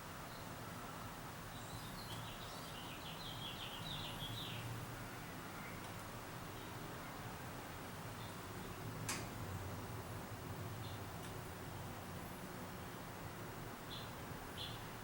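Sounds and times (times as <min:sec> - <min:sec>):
ceiling fan humming: 0:00.0 - 0:15.0
bird chirping: 0:01.5 - 0:04.8, 0:13.9 - 0:15.0.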